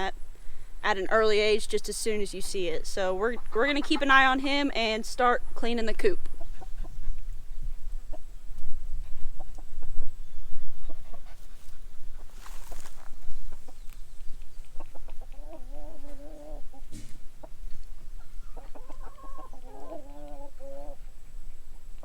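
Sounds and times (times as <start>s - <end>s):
chickens clucking: 0.0s - 22.0s
rustling: 11.0s - 15.0s
drawn-out wavering calls: 17.4s - 21.3s.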